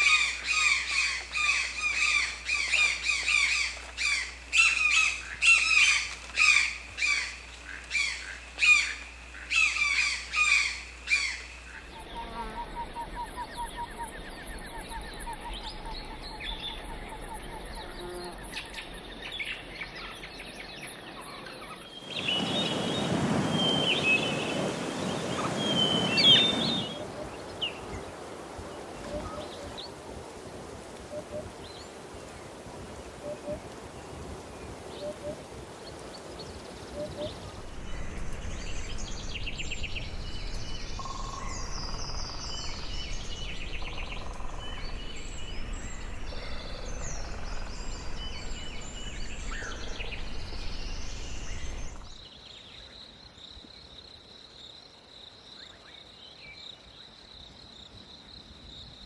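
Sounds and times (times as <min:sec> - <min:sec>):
wild birds calling and chirping: 0:00.0 - 0:52.2
birds trilling: 0:22.2 - 0:52.2.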